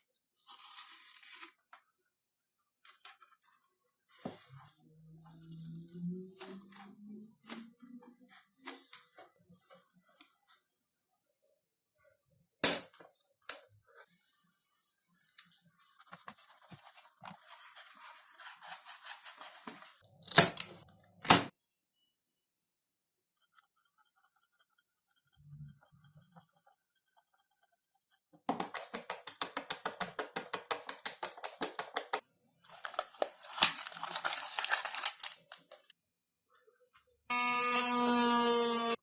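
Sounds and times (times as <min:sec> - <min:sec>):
scratchy rustling: 0:32.7 - 0:35.6.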